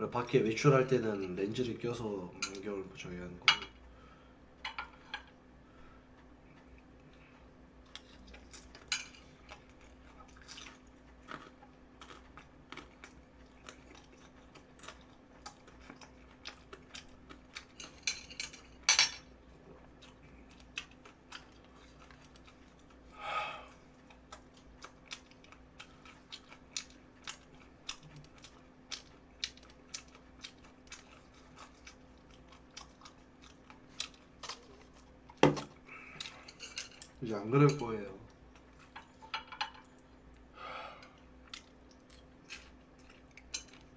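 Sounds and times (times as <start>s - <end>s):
chewing with wet smacks: 6.1s - 18.1s, 18.7s - 23.1s, 23.7s - 37.2s, 41.1s - 43.9s.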